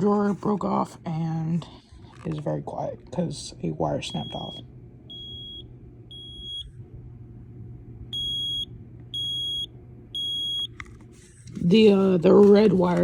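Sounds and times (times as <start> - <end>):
smoke alarm high-pitched beeps: 4.1 - 6.7, 8.1 - 10.7.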